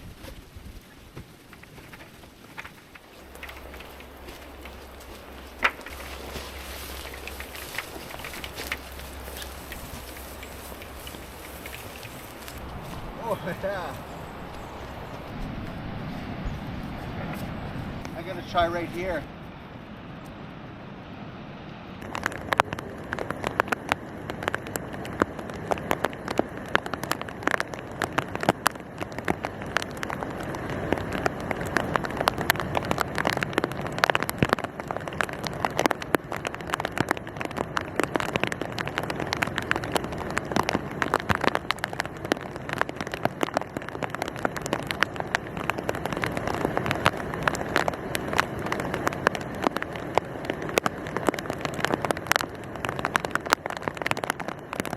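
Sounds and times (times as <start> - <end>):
raindrops pattering: 0.0 - 19.3, 22.0 - 54.9
steady hiss: 0.0 - 19.3.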